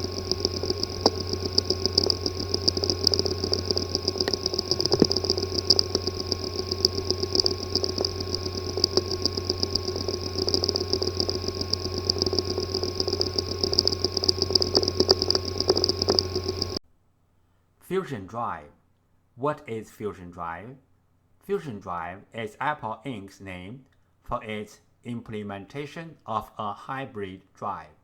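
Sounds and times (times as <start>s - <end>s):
hard disk drive hum and ticking: 0.0s - 16.8s.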